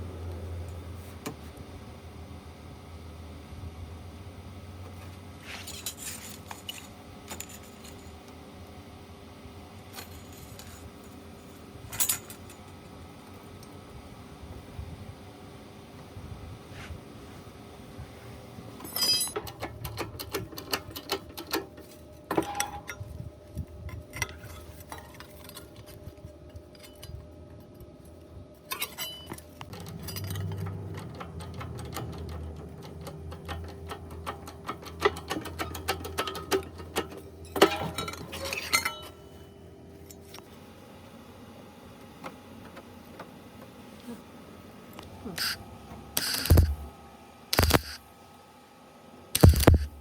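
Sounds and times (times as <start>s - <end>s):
low steady hum: 0.0s - 50.0s
metal clinks and knocks: 18.8s - 23.1s, 28.7s - 39.2s.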